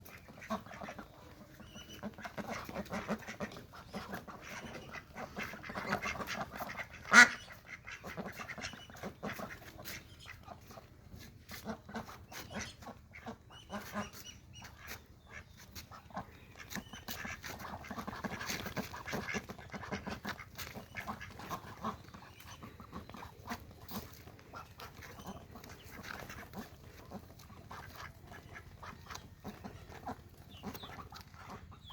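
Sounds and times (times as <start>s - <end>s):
ducks quacking: 0.0s - 31.9s.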